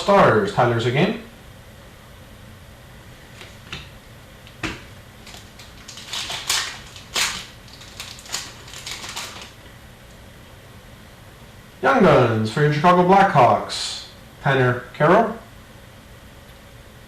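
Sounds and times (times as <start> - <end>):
card packs crinkling: 4.5 - 9.8.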